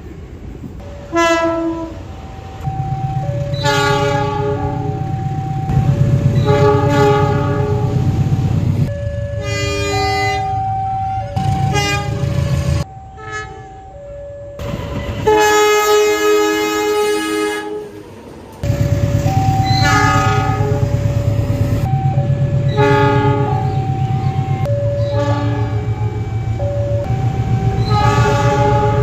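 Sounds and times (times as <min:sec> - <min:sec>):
low train rumble: 0:00.0 - 0:29.0
locomotive horn blasts: 0:01.1 - 0:02.1, 0:03.4 - 0:08.2, 0:09.4 - 0:10.6, 0:11.4 - 0:13.8, 0:15.2 - 0:18.0, 0:19.1 - 0:26.2, 0:27.1 - 0:29.0.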